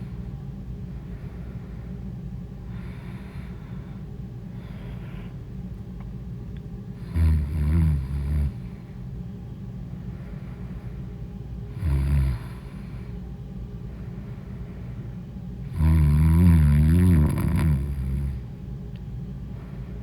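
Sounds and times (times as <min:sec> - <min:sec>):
soft breathing: 0:00.0 - 0:05.5, 0:09.8 - 0:11.3, 0:12.3 - 0:15.4, 0:19.4 - 0:20.0
woman snoring: 0:07.0 - 0:08.6, 0:11.7 - 0:13.0, 0:15.7 - 0:18.4.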